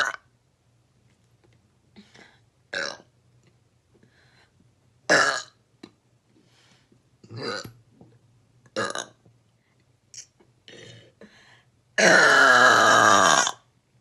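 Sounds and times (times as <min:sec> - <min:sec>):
person burping: 0:02.7 - 0:03.1, 0:05.1 - 0:05.6, 0:07.2 - 0:07.8, 0:08.8 - 0:09.2, 0:12.0 - 0:13.7.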